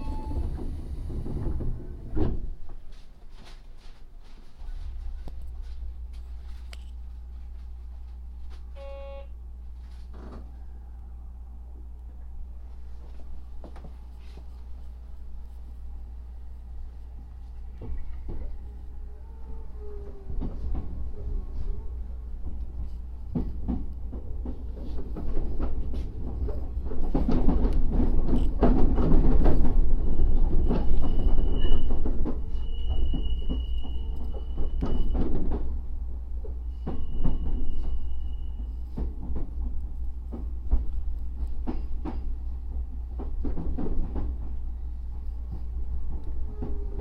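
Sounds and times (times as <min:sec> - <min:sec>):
train rumbling: 0:00.0 - 0:47.0
wheels clacking over rail joints: 0:22.3 - 0:38.1
high wheel squeal: 0:30.1 - 0:35.2, 0:36.7 - 0:38.8.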